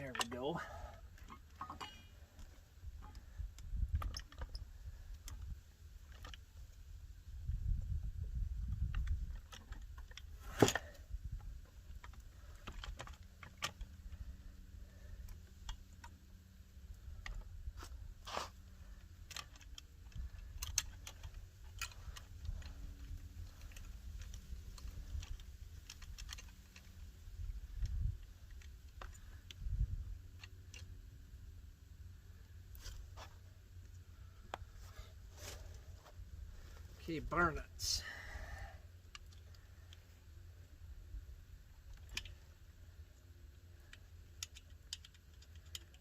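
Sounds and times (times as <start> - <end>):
metal parts clicking and rattling: 0.0 - 6.4, 8.6 - 16.2, 18.6 - 30.9, 43.7 - 46.0.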